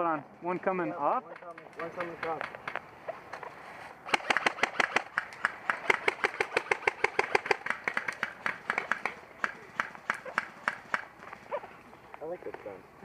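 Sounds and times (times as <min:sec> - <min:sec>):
airsoft gun firing full-auto: 0:04.1 - 0:11.0.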